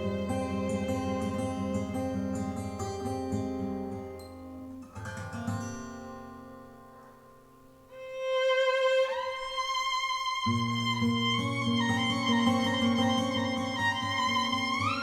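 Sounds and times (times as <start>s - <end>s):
violin long held notes: 0.0s - 2.5s, 7.9s - 15.0s
plucked acoustic guitar: 0.0s - 7.8s.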